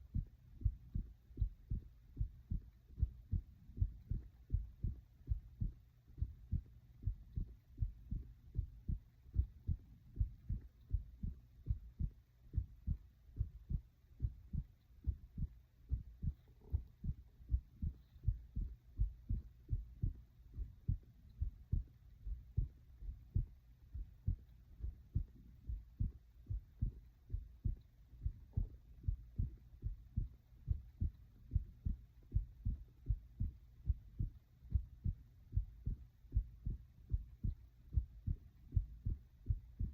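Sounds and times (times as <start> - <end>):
heart beating: 0.0 - 39.9.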